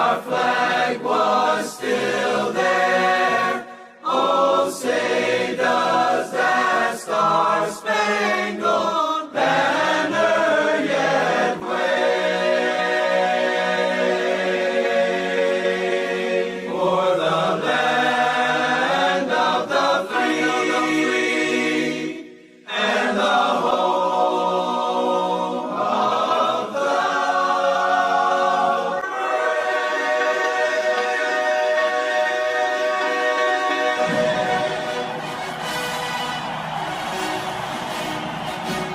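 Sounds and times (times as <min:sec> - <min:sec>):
choir singing held chords: 0:00.0 - 0:38.9.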